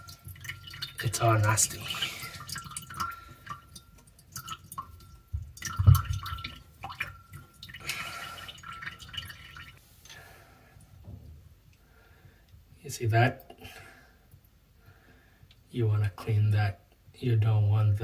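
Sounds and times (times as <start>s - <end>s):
drain parts clicking: 0.0s - 9.8s
water dripping from drain: 0.0s - 10.2s.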